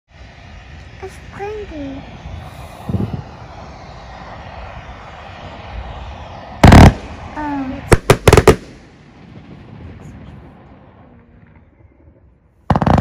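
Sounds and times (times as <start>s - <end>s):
firework bang: 4.2s - 13.0s
firework cracks: 4.3s - 11.6s, 12.6s - 13.0s.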